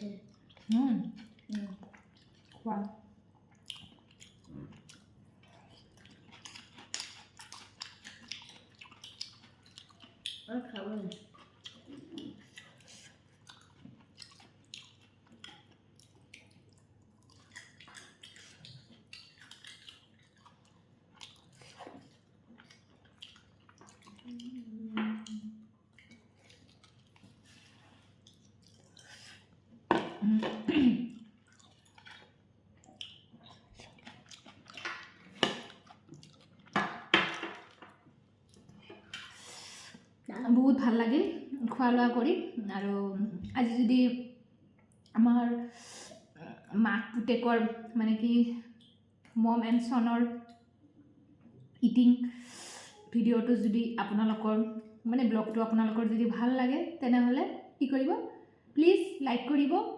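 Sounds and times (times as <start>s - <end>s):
person chewing: 0.3s - 2.6s, 3.2s - 29.8s, 31.1s - 40.2s.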